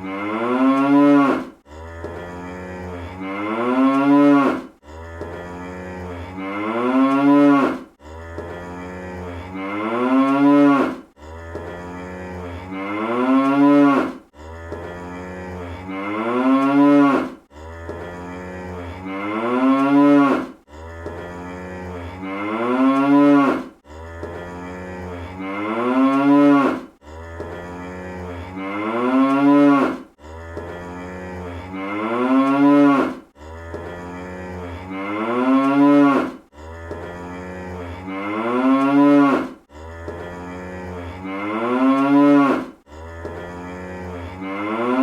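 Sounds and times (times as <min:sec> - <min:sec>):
cartoon cow mooing: 0:00.0 - 0:45.0.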